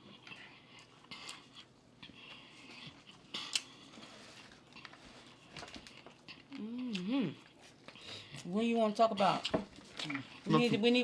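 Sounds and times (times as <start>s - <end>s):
people chewing crunchy food: 0.0s - 11.0s.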